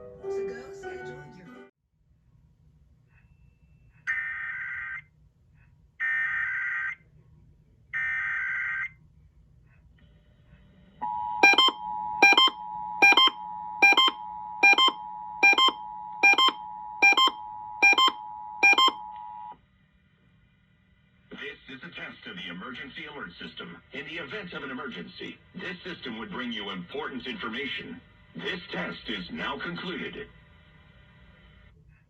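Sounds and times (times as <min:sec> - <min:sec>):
two-tone attention signal: 0:11.0 - 0:19.5.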